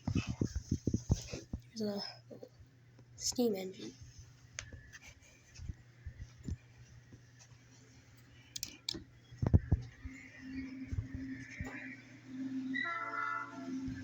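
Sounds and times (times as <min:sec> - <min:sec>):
faint low hum: 0:00.0 - 0:14.0
light clicks: 0:08.2 - 0:09.6.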